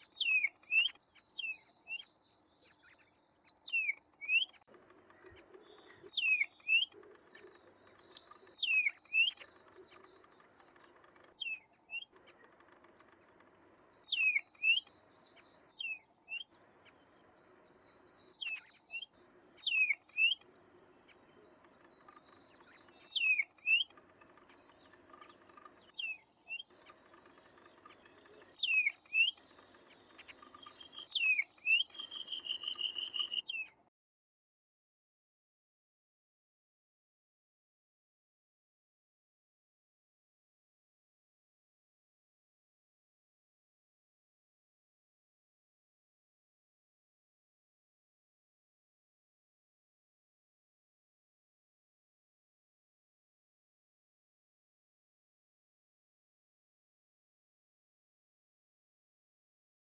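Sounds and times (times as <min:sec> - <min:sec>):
birds chirping: 0:00.0 - 0:33.9.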